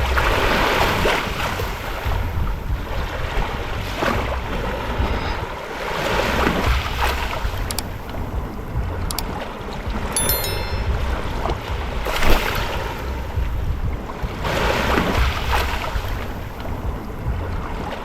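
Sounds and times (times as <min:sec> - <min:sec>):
ocean waves lapping on shore: 0:00.0 - 0:09.9, 0:14.0 - 0:18.0
wind on microphone: 0:00.0 - 0:18.0.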